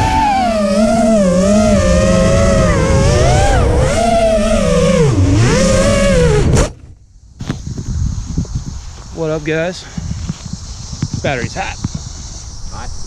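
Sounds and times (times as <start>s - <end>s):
drone motors whining: 0.0s - 8.6s.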